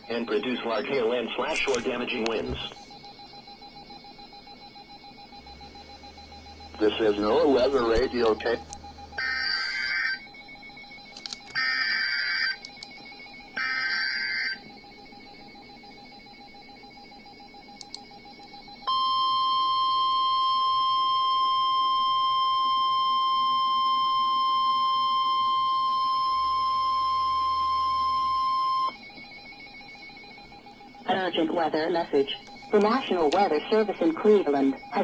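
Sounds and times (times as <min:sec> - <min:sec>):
faint hum: 0:00.0 - 0:35.0
steady single-pitch alarm tone: 0:00.0 - 0:35.0
screeching digital data bursts: 0:05.3 - 0:10.3, 0:11.5 - 0:12.7, 0:13.6 - 0:14.6.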